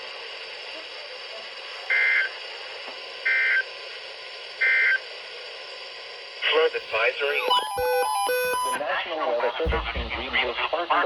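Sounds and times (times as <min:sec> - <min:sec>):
radio hiss: 0:06.4 - 0:11.0
short data burst squawks: 0:07.3 - 0:08.8.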